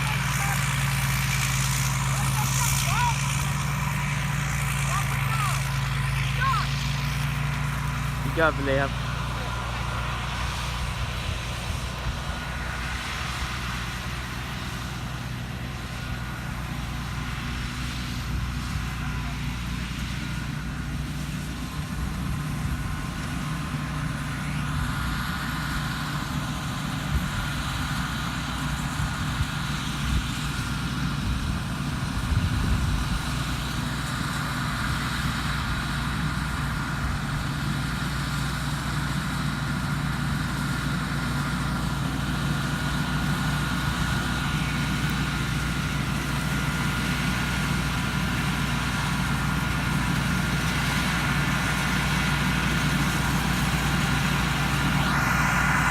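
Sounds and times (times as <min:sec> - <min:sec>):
combine harvester engine drone: 0:00.0 - 0:55.9.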